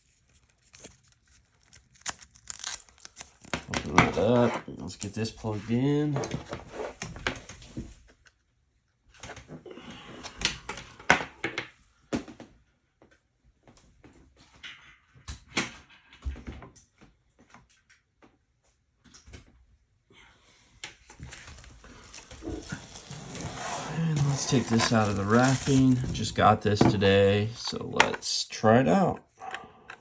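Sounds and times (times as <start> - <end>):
packaging rustling: 0.0 - 5.2, 21.2 - 27.8.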